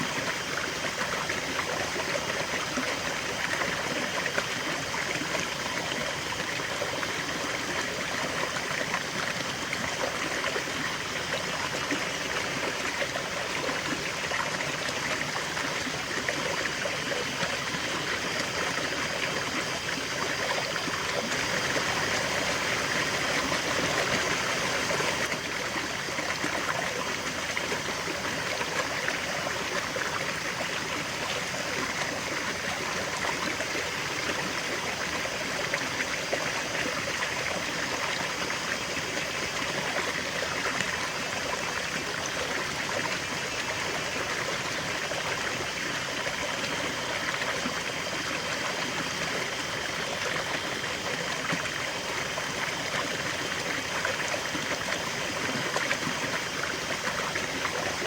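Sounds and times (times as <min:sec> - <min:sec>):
river water babbling over stones: 0:00.0 - 0:58.0.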